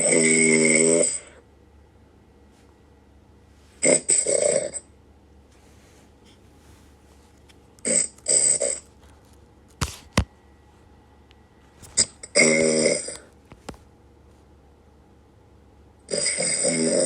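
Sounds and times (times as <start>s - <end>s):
person snoring: 0.0s - 1.4s, 3.8s - 4.9s, 12.3s - 13.3s, 16.1s - 17.0s.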